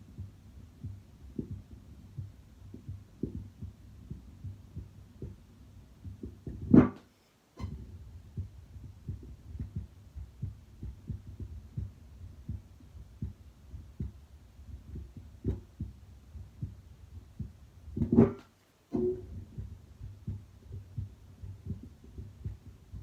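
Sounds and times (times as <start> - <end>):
heartbeat through stethoscope: 0.0 - 7.0, 7.6 - 23.0.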